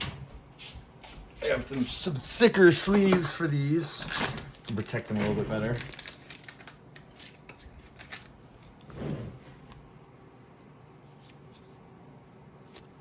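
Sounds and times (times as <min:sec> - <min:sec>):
plastic card sleeve rustling: 0:04.0 - 0:08.4.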